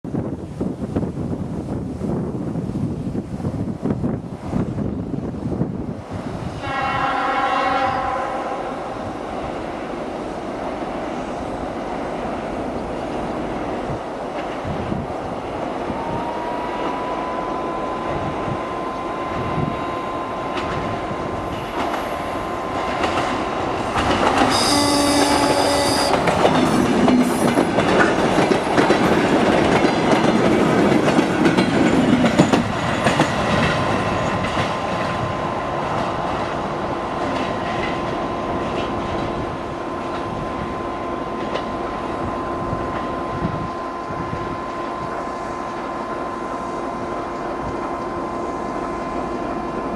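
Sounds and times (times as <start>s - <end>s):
train running past: 0.1s - 49.9s
train horn blast: 6.6s - 9.0s, 15.9s - 20.4s, 24.4s - 27.5s
wheels clicking over rail joints: 20.5s - 40.4s.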